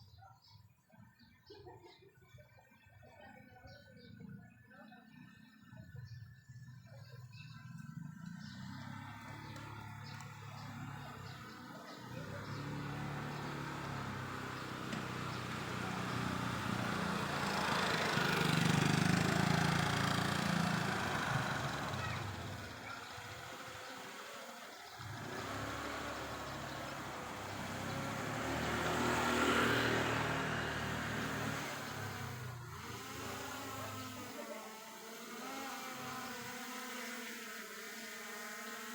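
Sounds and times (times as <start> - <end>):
vehicle engines passing: 7.4 - 37.4.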